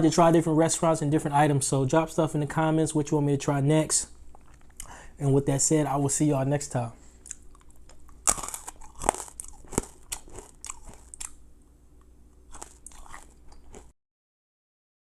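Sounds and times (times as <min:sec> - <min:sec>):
hard candy crunching: 0:07.2 - 0:11.4, 0:12.0 - 0:13.9.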